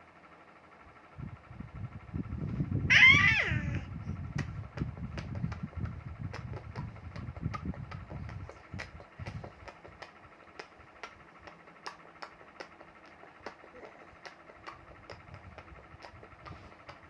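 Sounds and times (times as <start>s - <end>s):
child mouth clicking: 4.4s - 17.0s.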